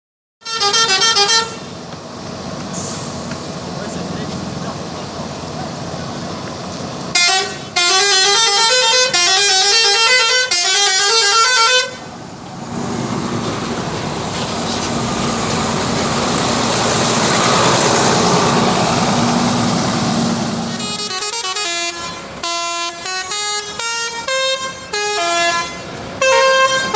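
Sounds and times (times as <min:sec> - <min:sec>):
musical air horn runs: 0:00.4 - 0:01.7, 0:07.1 - 0:12.0, 0:20.7 - 0:26.9
bus engine and road noise: 0:00.4 - 0:26.9.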